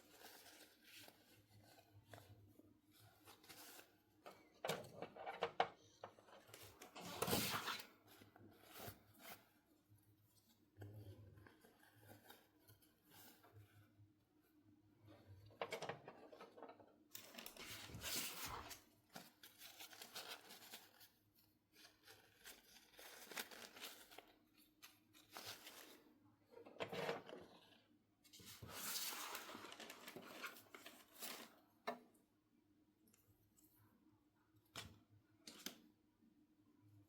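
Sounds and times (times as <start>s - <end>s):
plastic and paper crinkling: 17.2s - 26.0s, 28.4s - 31.6s.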